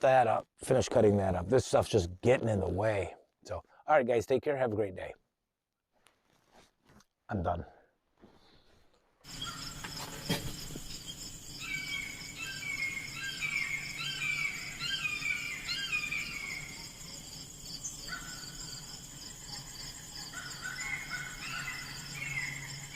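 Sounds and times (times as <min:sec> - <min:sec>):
bird chirping: 0:09.2 - 0:22.9
insects trilling: 0:09.2 - 0:22.9.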